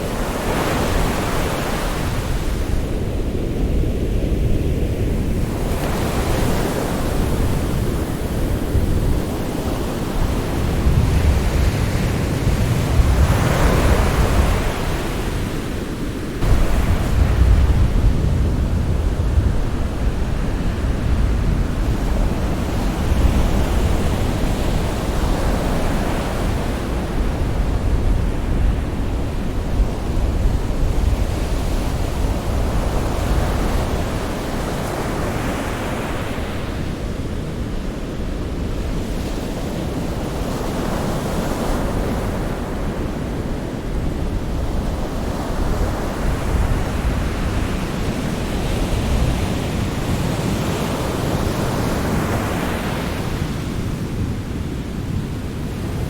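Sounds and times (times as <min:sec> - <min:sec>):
sea waves breaking on shore: 0:00.0 - 0:56.0
deep rumble: 0:16.4 - 0:22.4.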